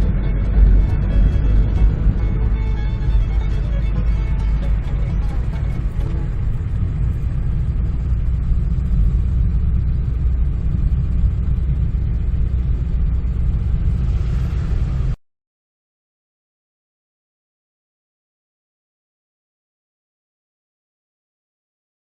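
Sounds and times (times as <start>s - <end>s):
vehicle road and engine rumble: 0.0s - 15.2s.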